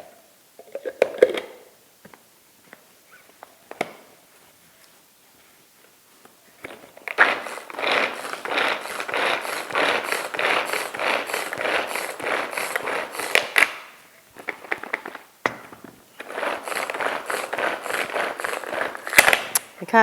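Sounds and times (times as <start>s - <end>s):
food chopper ratcheting whir: 6.7s - 19.6s.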